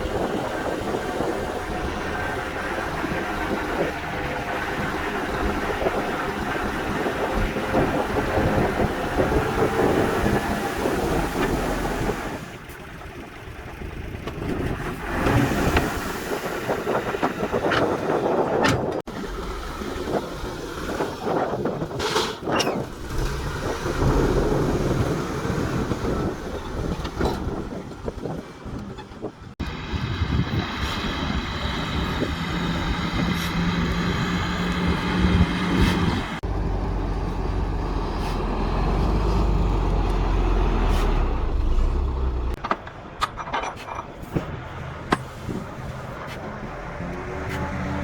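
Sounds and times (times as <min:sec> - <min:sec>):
diesel engines running: 0:00.0 - 0:48.0
metal clanks: 0:42.5 - 0:45.3.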